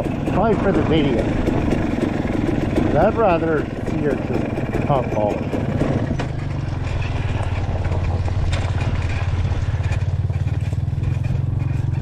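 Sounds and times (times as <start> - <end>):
dirt bike engine running: 0.0 - 12.0.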